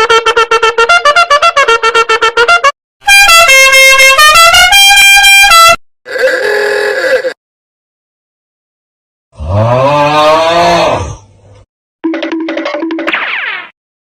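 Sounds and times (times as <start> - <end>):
brassy horn-like tune: 0.0 - 5.8.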